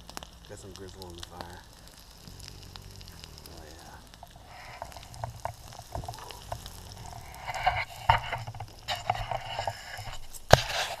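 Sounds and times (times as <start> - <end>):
low rumble: 0.0 - 8.9
campfire crackles and pops: 0.0 - 11.0
meat sizzling on a grill: 0.0 - 11.0.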